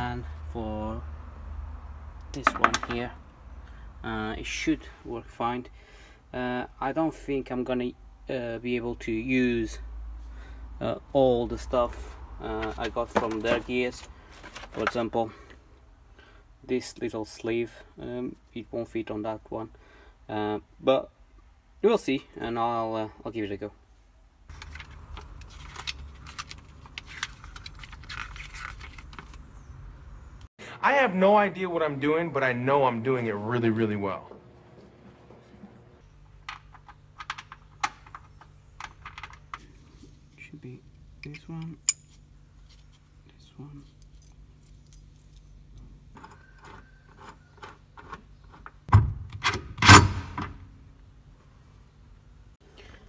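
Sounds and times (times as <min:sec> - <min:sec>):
low steady hum: 0:34.6 - 0:46.8
small metal parts clinking: 0:41.3 - 0:47.8.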